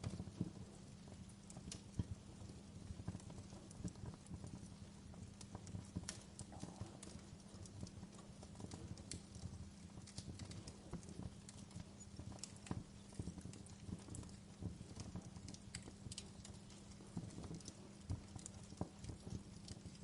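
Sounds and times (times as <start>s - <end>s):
campfire crackling: 0.0s - 20.0s.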